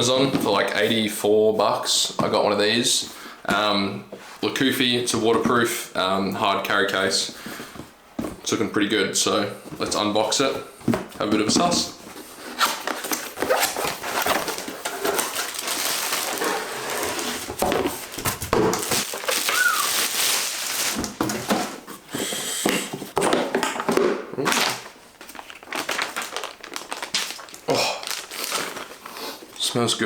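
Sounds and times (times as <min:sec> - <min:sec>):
plastic and cardboard rustling: 0:09.6 - 0:29.7.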